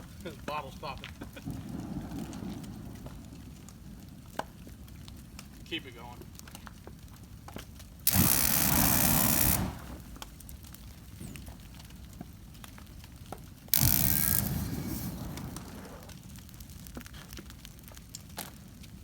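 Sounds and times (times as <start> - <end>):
fire crackling faintly: 0.0 - 19.0
flamethrower rushing blast: 1.0 - 5.6, 8.0 - 17.1.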